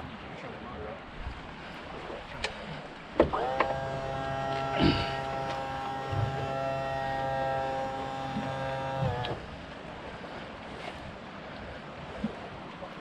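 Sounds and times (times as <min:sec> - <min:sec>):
electric trolling motor buzzing: 0:03.2 - 0:09.8.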